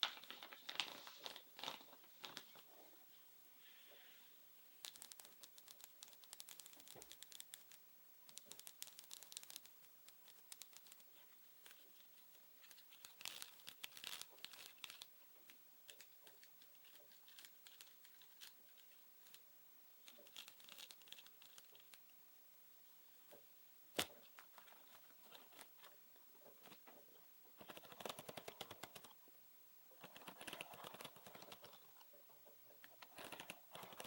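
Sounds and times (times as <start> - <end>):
thin material crinkling: 0.0 - 2.7, 4.7 - 19.4, 20.0 - 22.1, 24.0 - 26.9.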